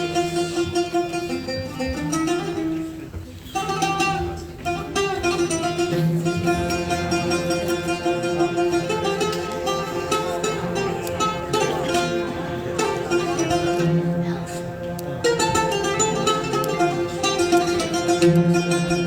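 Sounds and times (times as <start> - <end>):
plucked string instrument melody: 0.0 - 19.0.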